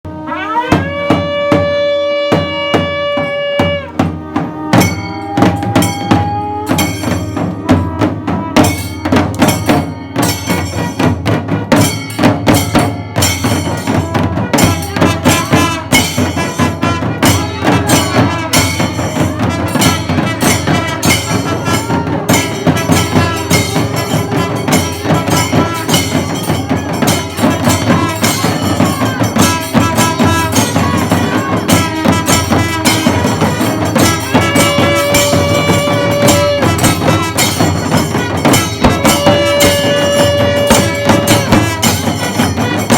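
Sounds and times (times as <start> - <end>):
drums and cymbals fast rhythm: 0.1 - 42.9
long steady pitched note: 17.3 - 42.2.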